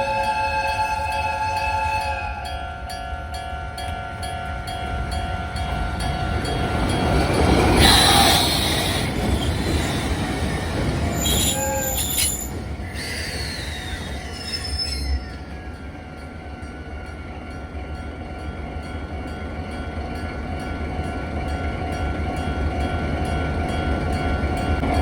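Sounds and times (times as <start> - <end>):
train wheels screeching: 6.6 - 15.9.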